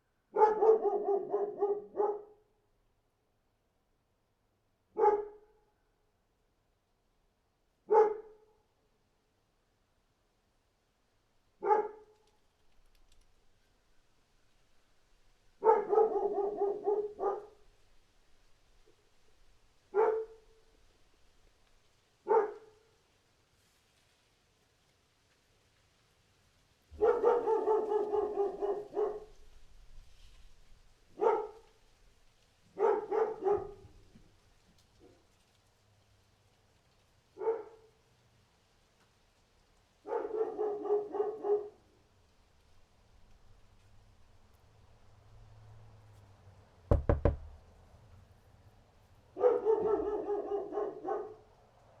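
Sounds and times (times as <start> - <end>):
dog barking: 0.3 - 2.5, 4.9 - 5.6, 7.8 - 8.5, 11.6 - 12.2, 15.6 - 17.7, 19.9 - 20.6, 22.2 - 22.9, 26.9 - 29.5, 31.1 - 31.7, 32.7 - 34.0, 37.4 - 38.0, 40.0 - 41.9, 49.3 - 51.5.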